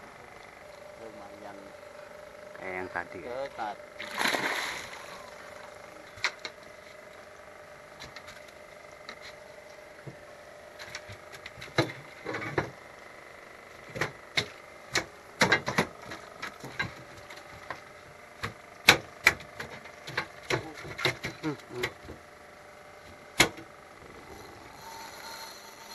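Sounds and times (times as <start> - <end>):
faint steady hum: 0.0 - 25.9
sharp clicks and knocks: 13.9 - 17.8, 18.4 - 22.2, 23.4 - 23.7.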